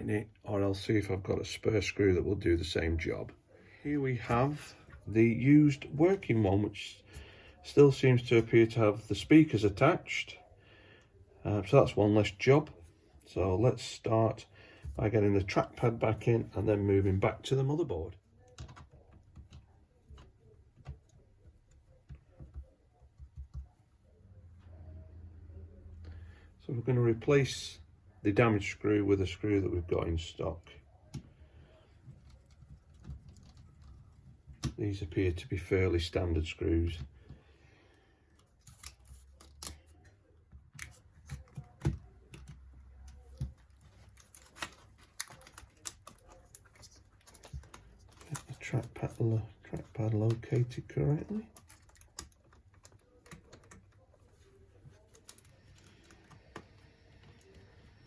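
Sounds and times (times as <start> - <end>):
plastic laptop parts handled: 38.3 - 58.0
small parts and tools clicking: 49.8 - 57.7.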